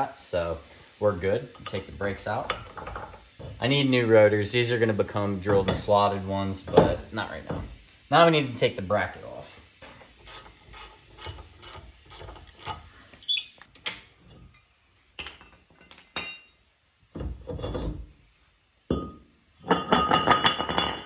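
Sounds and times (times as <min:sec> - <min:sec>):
rattling tool noise: 0:01.4 - 0:08.4, 0:09.2 - 0:13.7.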